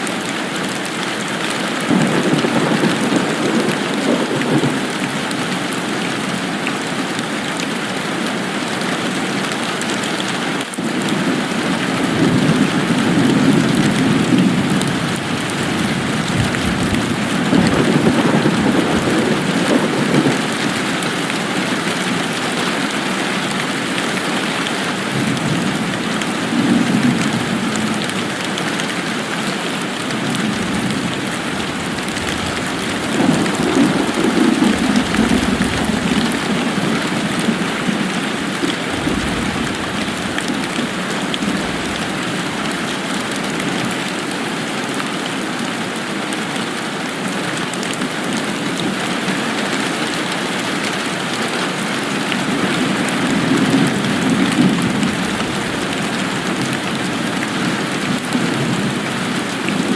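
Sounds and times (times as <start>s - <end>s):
steady rain hiss: 0.0s - 59.9s
distant thunder rumbles: 1.9s - 5.0s, 11.0s - 21.4s, 30.2s - 43.5s, 52.4s - 59.1s.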